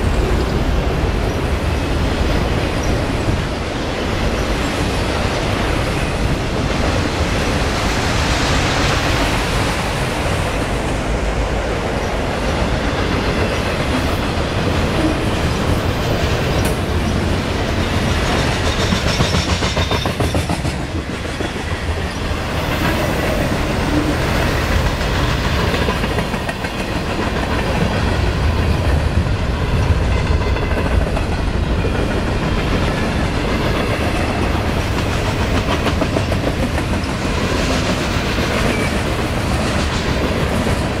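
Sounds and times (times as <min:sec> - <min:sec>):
train rumble: 0:00.0 - 0:41.0
train wheels clicking over rail joints: 0:12.8 - 0:41.0.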